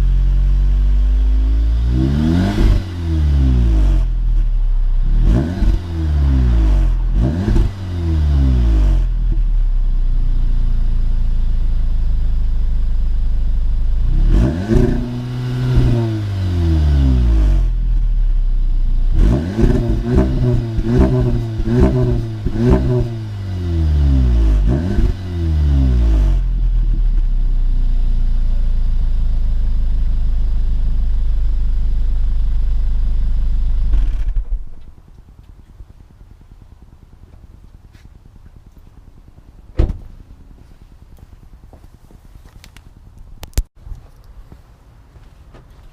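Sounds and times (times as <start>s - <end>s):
car engine revving: 0.0s - 34.7s.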